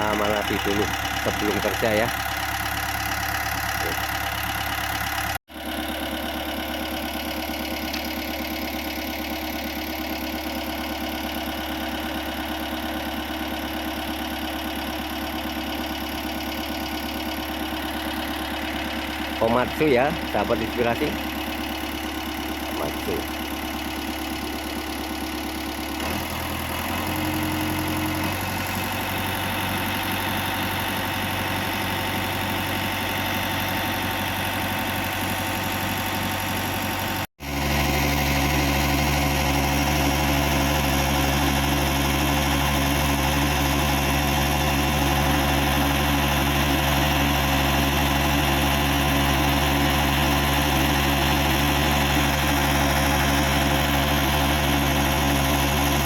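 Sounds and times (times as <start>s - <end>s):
excavator diesel engine idling: 0.0s - 56.0s.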